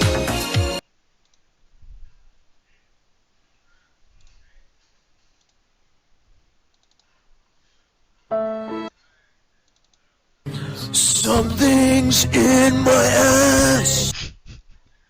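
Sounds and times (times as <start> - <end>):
loud music: 0.0 - 0.8, 10.5 - 14.1
faint clicks: 1.2 - 1.5, 4.2 - 5.7, 6.7 - 7.2, 9.6 - 10.1
keyboard-like musical tone: 8.3 - 8.9.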